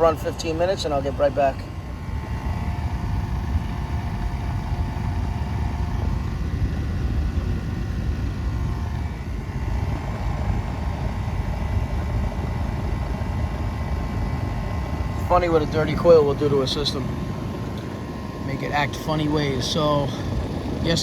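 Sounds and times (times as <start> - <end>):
air conditioner unit droning: 0.0 - 21.0
faint steady hum: 0.0 - 21.0.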